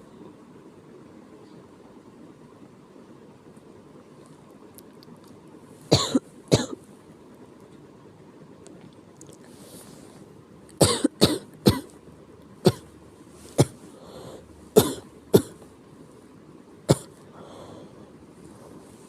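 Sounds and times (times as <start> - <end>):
person coughing: 5.9 - 6.8, 10.8 - 11.9, 12.6 - 12.9, 13.6 - 13.8, 14.8 - 15.6, 16.9 - 17.2
faint intake of breath: 9.4 - 10.3, 13.4 - 14.6, 17.3 - 19.0.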